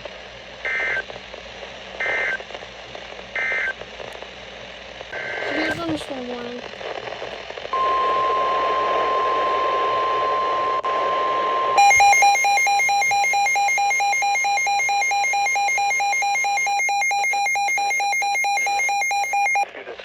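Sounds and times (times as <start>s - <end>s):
radio hiss: 5.0s - 10.4s, 18.6s - 20.0s
steady warning alarm tone: 11.8s - 19.6s
rapidly pulsing electronic beeping: 11.8s - 19.7s.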